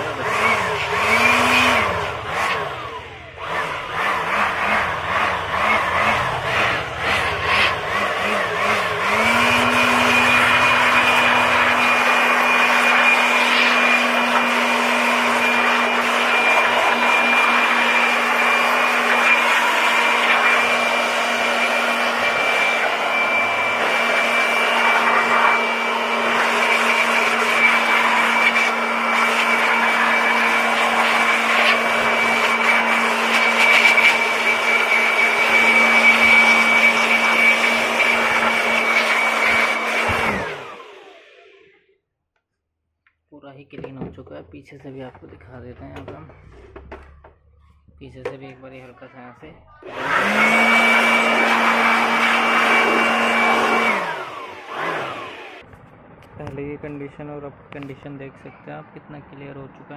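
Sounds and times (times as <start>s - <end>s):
electric air blower whining: 0.0s - 41.8s, 49.8s - 56.4s.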